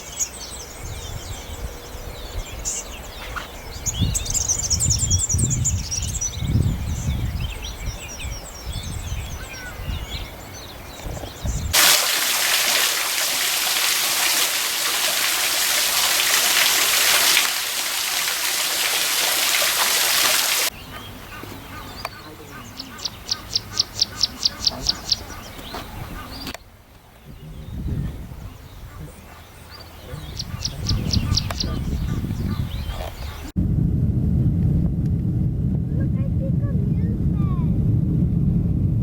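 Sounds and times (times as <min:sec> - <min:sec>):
birds chirping: 0:00.0 - 0:33.5
running water rushing: 0:11.7 - 0:20.7
uneven low rumble: 0:33.6 - 0:39.0.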